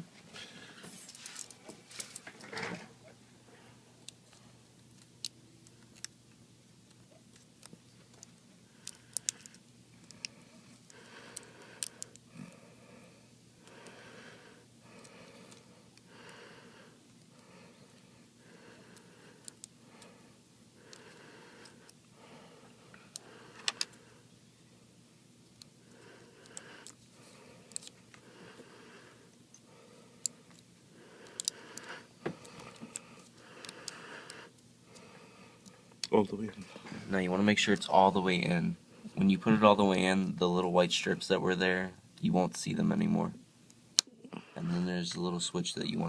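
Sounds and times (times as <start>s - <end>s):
light room hiss: 0.0s - 46.0s
small parts clicking: 6.9s - 10.3s, 11.0s - 12.2s, 27.7s - 28.0s, 30.2s - 33.0s
faint breathing: 8.6s - 25.0s, 25.8s - 37.4s.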